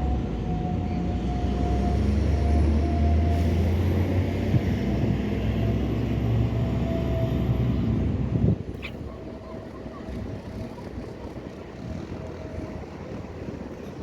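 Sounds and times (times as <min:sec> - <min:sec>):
boat engine rumbling: 0:08.6 - 0:14.0.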